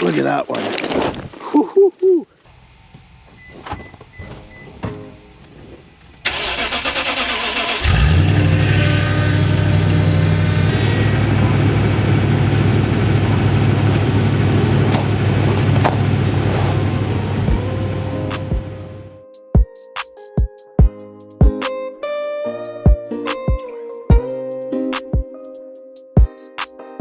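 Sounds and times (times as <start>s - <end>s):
engine cranking: 2.5s - 19.2s
engine running at low note: 2.5s - 19.2s.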